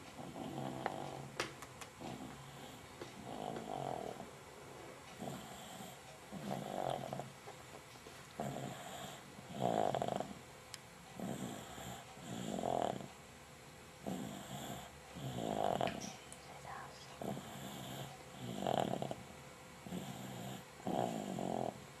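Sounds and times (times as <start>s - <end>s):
snoring: 0.2s - 1.3s, 2.0s - 4.3s, 5.2s - 7.3s, 8.4s - 10.4s, 11.2s - 13.1s, 14.0s - 16.1s, 17.2s - 21.8s.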